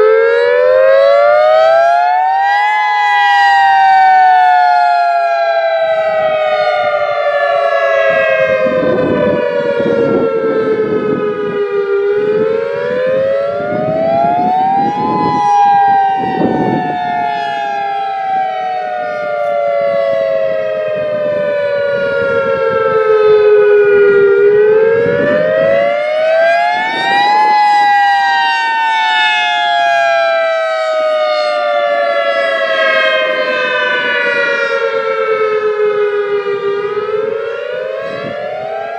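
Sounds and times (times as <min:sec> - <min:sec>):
warning siren wailing: 0:00.0 - 0:38.9.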